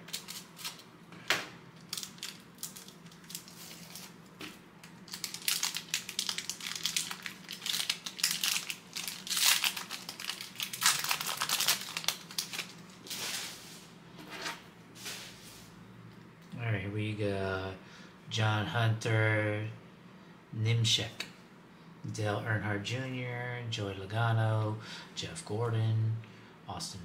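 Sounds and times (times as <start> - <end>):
wrapper crinkling and tearing: 0.0 - 0.9, 1.8 - 13.5.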